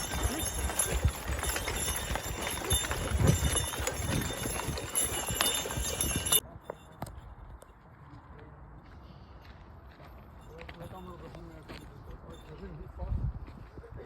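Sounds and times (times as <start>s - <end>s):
horse hooves clopping: 0.0s - 8.2s, 10.0s - 12.9s.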